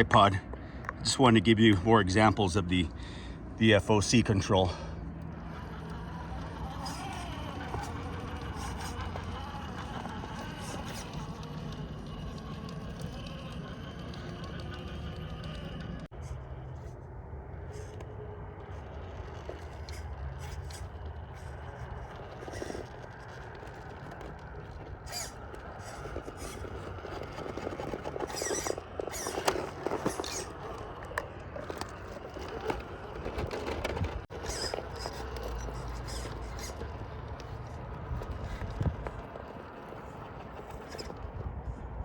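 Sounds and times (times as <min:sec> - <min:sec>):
toy car motor running: 0:03.1 - 0:41.8
tyres scraping on stone: 0:05.4 - 0:16.2, 0:17.8 - 0:41.5.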